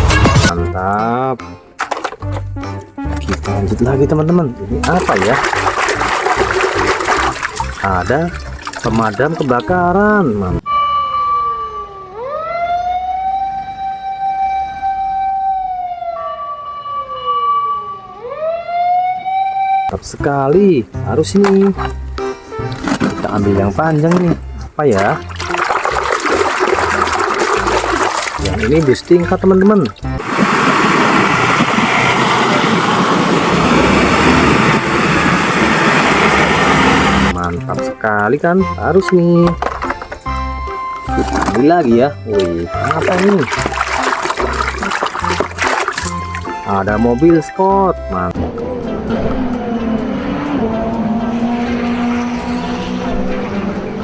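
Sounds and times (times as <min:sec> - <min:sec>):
water spraying: 0:04.8 - 0:09.9, 0:21.4 - 0:34.8, 0:41.0 - 0:47.7
fire engine siren wailing: 0:10.7 - 0:19.9.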